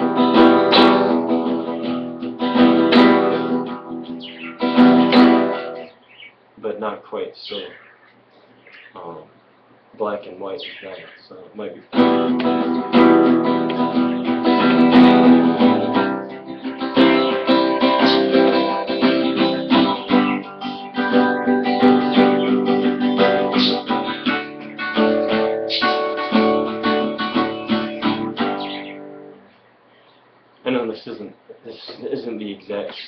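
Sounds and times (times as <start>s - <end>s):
acoustic guitar strumming: 0.0s - 6.1s, 11.9s - 29.5s.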